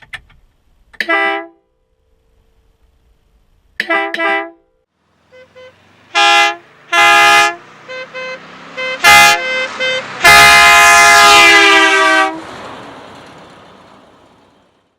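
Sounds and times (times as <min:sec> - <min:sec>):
air horn blasts: 0:01.0 - 0:01.6, 0:03.8 - 0:04.6, 0:05.3 - 0:12.4.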